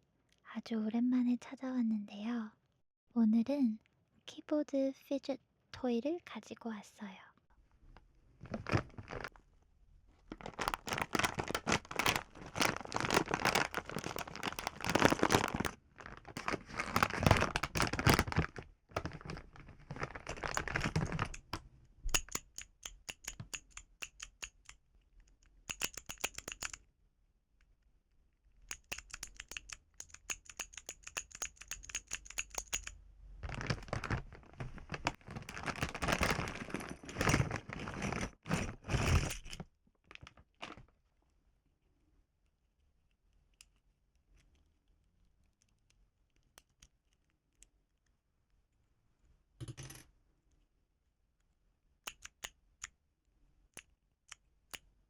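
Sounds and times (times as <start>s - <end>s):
keyboard toy clacking and rustling: 8.5s - 9.4s, 10.2s - 24.8s, 25.4s - 26.8s, 28.6s - 40.8s.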